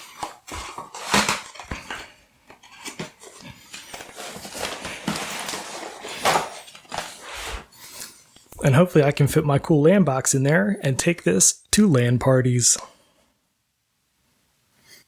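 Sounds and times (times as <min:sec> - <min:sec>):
bag rustling: 0:02.7 - 0:07.7.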